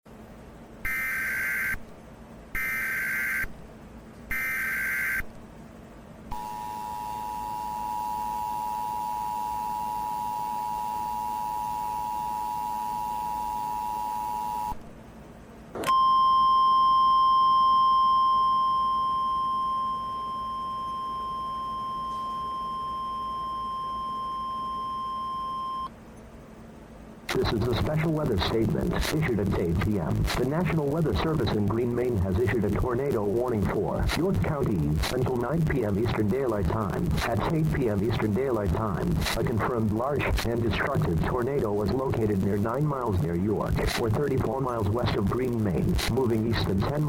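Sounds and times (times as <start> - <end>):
steady warning tone: 0.8 - 1.9, 2.6 - 3.7, 4.3 - 5.4, 6.3 - 14.8, 15.9 - 25.9, 27.3 - 47.0
warbling data bursts: 27.3 - 47.0.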